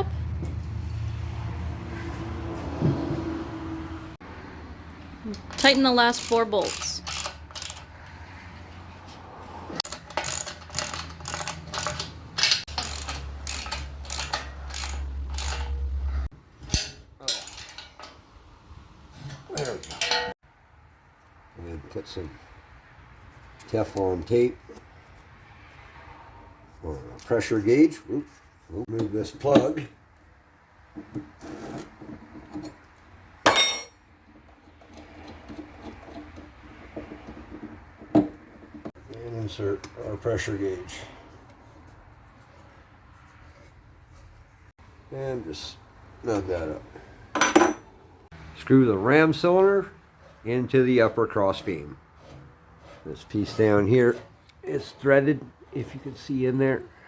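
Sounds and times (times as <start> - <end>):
metal parts clicking and rattling: 5.3 - 7.9, 9.8 - 15.9, 16.6 - 18.2, 19.3 - 20.3
socket ratchet clicking: 5.4 - 7.9
sharp metallic clank ringing: 33.5 - 34.0.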